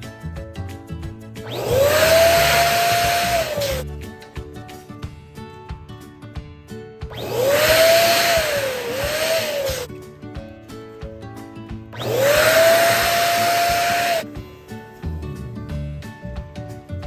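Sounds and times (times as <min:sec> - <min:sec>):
background music: 0:00.0 - 0:17.0
electric balloon pump running: 0:01.4 - 0:03.8, 0:07.1 - 0:09.9, 0:12.0 - 0:14.2.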